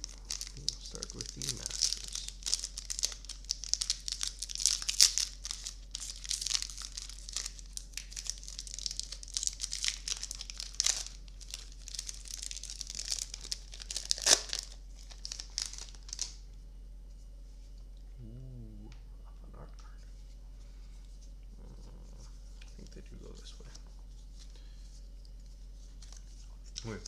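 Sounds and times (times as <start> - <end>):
wrapper crinkling and tearing: 0.0 - 16.4, 26.8 - 27.0.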